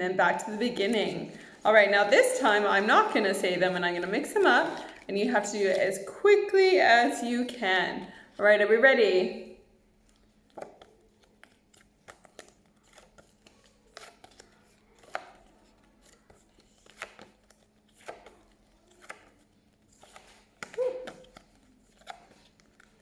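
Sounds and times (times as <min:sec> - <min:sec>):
flashcards flipping: 0:00.4 - 0:06.1, 0:09.9 - 0:23.0.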